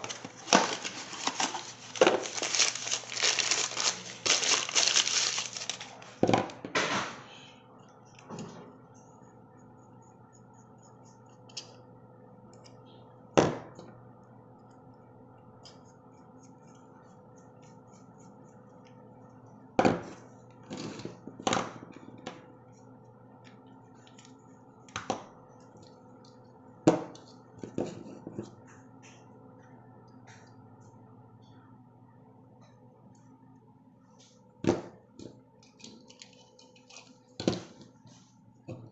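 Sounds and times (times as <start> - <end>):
faint steady hum: 0.0 - 38.9.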